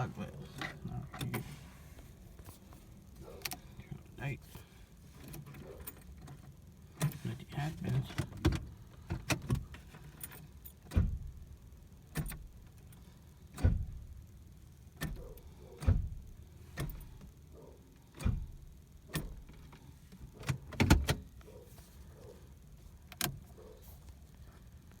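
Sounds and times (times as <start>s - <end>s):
car key clicks and knocks: 8.1s - 11.4s, 13.5s - 14.1s, 15.0s - 17.3s, 18.1s - 21.4s.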